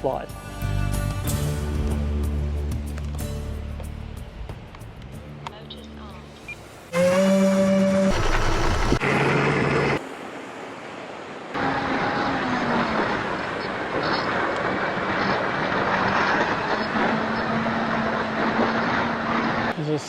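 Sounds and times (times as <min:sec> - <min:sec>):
strong wind on microphone: 0:11.6 - 0:19.7.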